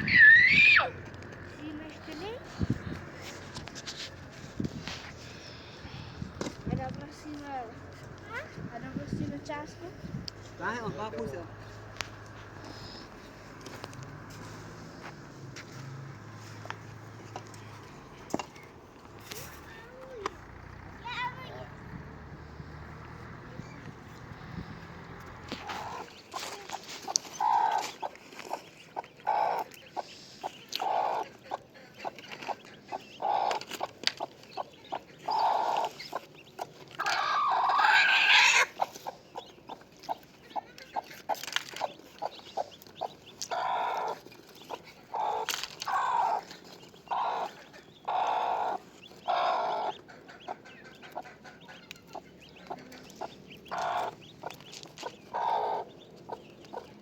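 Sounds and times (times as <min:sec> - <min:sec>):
chickens clucking: 0:16.4 - 0:57.0.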